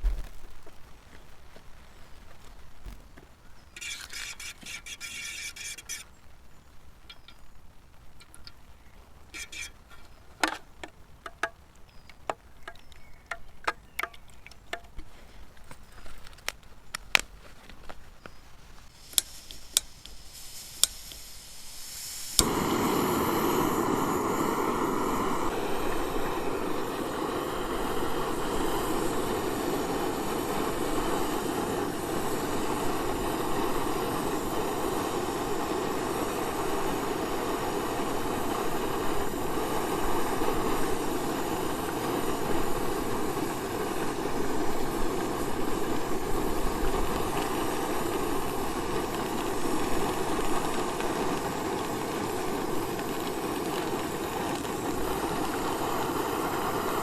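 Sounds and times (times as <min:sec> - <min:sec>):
camp stove burner roaring: 0:03.7 - 0:18.0, 0:18.8 - 0:57.0
cooking gear clicks and taps: 0:08.2 - 0:08.6, 0:09.3 - 0:18.4
stove igniter click: 0:19.1 - 0:21.3, 0:22.2 - 0:56.9.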